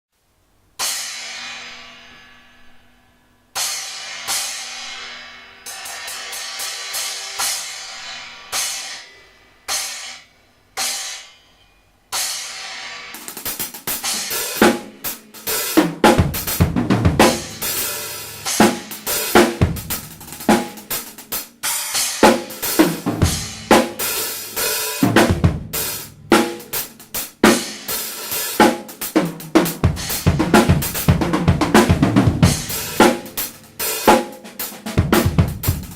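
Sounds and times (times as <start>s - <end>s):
drum kit groove: 12.1s - 35.9s
cymbal hits ringing: 17.2s - 21.0s.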